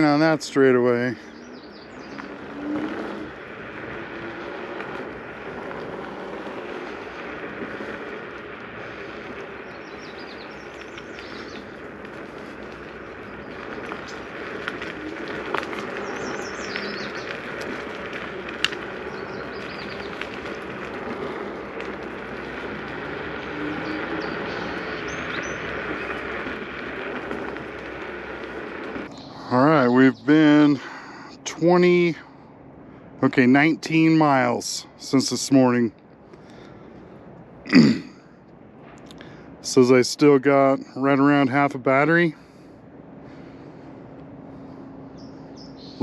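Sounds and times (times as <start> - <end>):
tyre and wind noise: 0.0 - 29.4.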